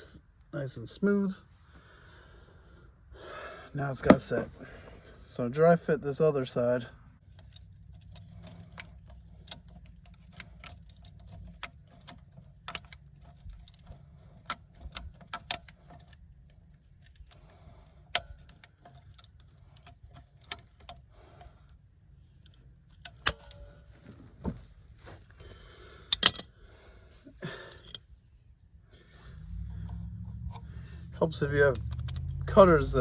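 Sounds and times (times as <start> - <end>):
faint low hum: 0.0 - 33.0
plastic pipe fittings clicking: 7.2 - 24.6, 26.0 - 26.5, 31.5 - 33.0.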